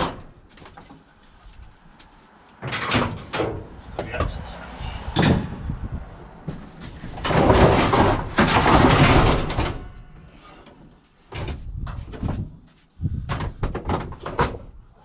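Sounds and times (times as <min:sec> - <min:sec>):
scrap metal knocks and rattles: 0:02.6 - 0:04.4, 0:05.0 - 0:14.8
scrap metal scraping: 0:06.4 - 0:10.9.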